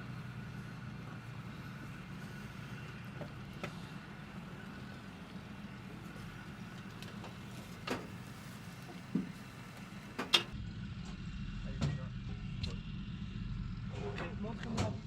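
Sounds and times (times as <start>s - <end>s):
engine low rumble: 0.0s - 15.0s.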